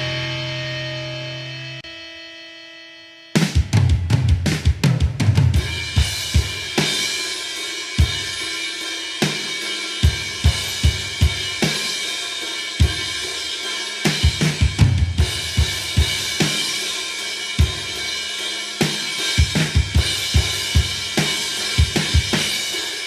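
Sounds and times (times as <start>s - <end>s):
rock drum kit playing: 0.0s - 1.8s, 3.4s - 23.0s
cymbal wash: 0.0s - 3.6s.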